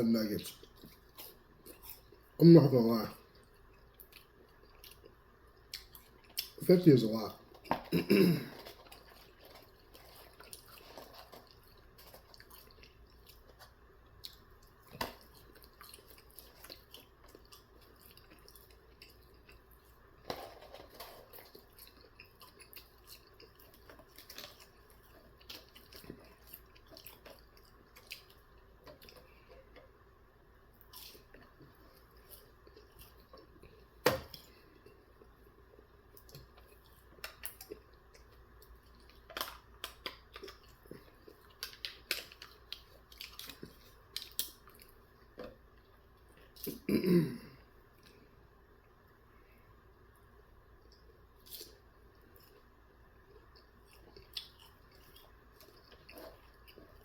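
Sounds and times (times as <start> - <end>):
wet chewing sounds: 0.4 - 20.2, 21.2 - 30.1, 30.7 - 46.9, 50.2 - 57.0.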